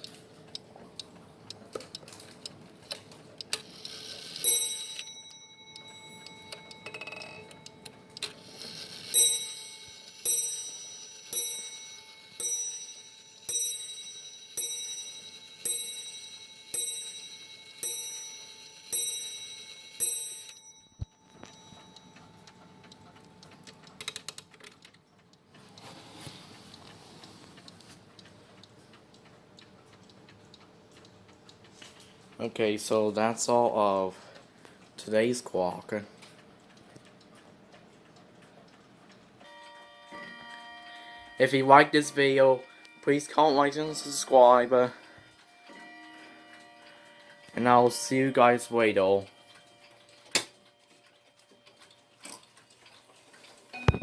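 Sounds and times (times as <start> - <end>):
clock bell strikes: 4.1 - 23.4, 39.4 - 45.0.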